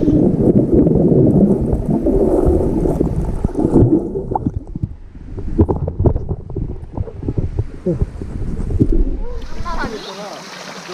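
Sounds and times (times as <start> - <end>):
underwater stream gurgling: 0.0 - 10.9.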